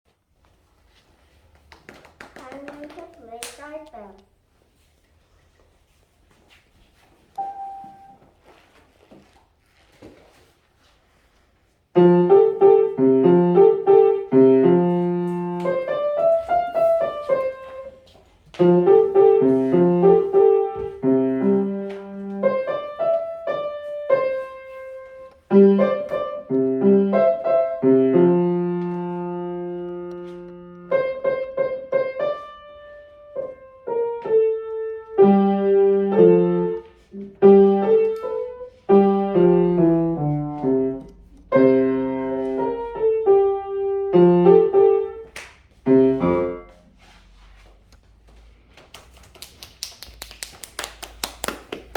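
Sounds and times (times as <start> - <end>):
solo piano melody: 7.4 - 8.2, 12.0 - 18.0, 18.6 - 46.8.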